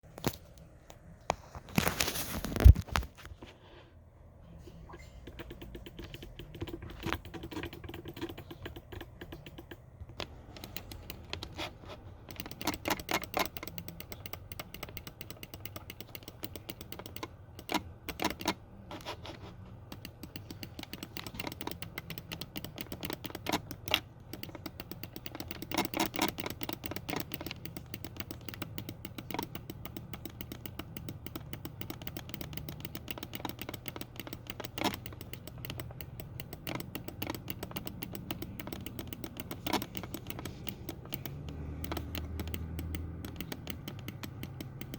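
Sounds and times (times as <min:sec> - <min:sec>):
mouse buttons clicking: 0:04.9 - 0:19.1, 0:19.9 - 0:44.9.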